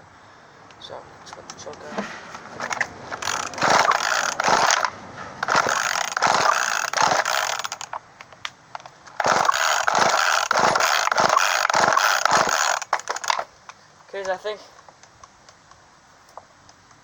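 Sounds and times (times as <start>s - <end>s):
chainsaw starter cord ratcheting: 2.6s - 13.5s.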